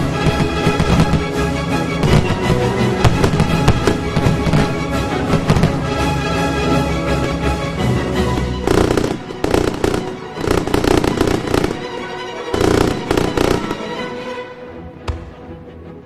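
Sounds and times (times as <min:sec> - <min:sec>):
fireworks cracking: 0:00.0 - 0:06.7, 0:08.2 - 0:14.0
music: 0:00.0 - 0:16.0.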